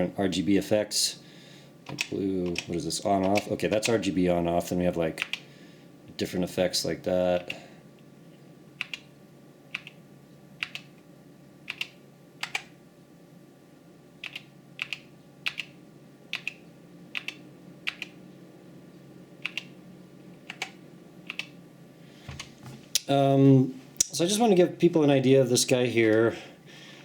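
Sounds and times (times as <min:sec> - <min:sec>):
mechanical keyboard keystrokes: 0:14.2 - 0:15.7.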